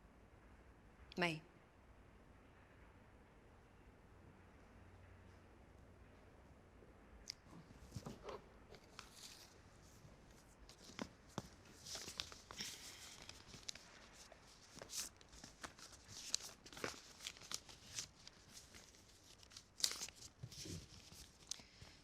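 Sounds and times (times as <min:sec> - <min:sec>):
faint rustling with handling clicks: 0:07.4 - 0:22.0.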